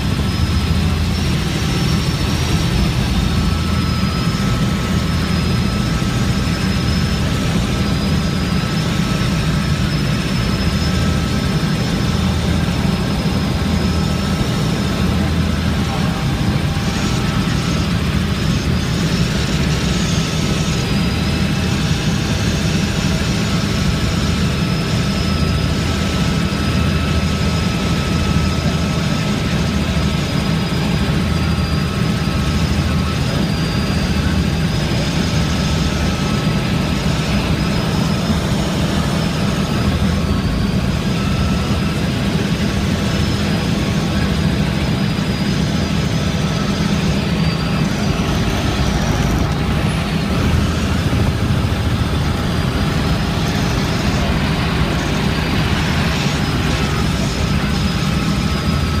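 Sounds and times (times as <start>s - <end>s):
helicopter engine and rotor drone: 0.0s - 59.0s
high-pitched whine: 0.0s - 59.0s.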